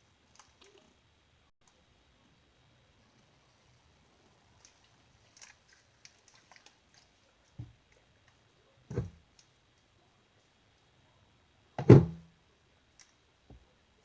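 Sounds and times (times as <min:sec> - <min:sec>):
soft thumps: 0:08.9 - 0:09.2, 0:11.8 - 0:12.2.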